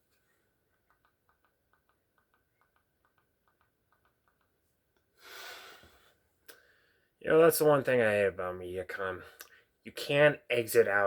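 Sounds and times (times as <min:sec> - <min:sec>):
sharp breath out through nose: 0:05.2 - 0:07.1.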